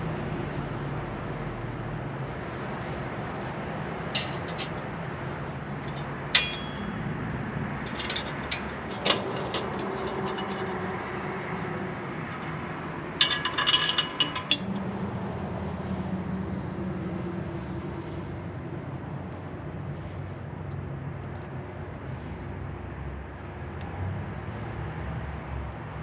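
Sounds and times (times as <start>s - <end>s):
metal tools clinking and scraping: 3.4s - 7.2s, 7.8s - 16.0s
ringing metal strike: 5.9s - 7.0s.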